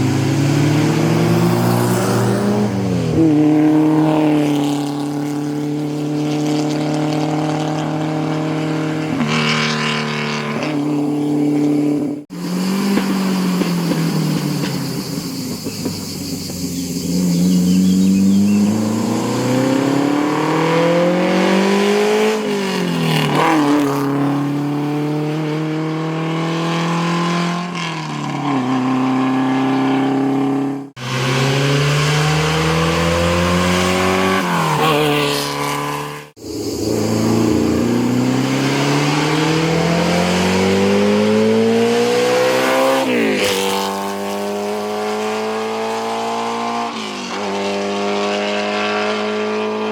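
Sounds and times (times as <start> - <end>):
racing car engine accelerating: 0.0 - 49.9.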